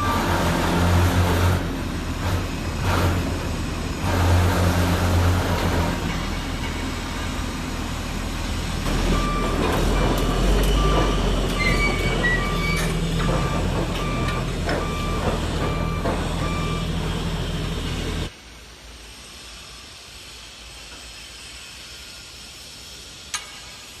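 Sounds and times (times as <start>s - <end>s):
drilling rig engine running: 0.0s - 18.3s
warning alarm beeping: 8.9s - 17.4s
faint hiss: 18.3s - 24.0s.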